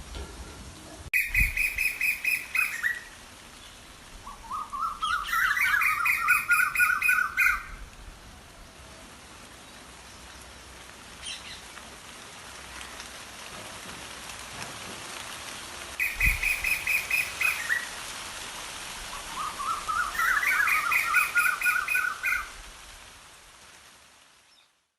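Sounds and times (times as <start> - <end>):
steady background hiss: 0.0 - 24.9
songbird chirping: 1.1 - 8.8, 16.0 - 18.0, 19.1 - 22.6.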